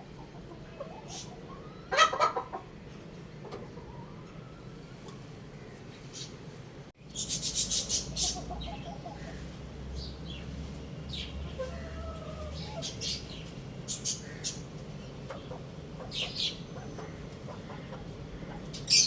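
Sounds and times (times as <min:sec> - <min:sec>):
lower bird calls: 0:00.0 - 0:02.6, 0:07.0 - 0:19.0
birds chirping: 0:00.0 - 0:04.6, 0:05.4 - 0:19.0.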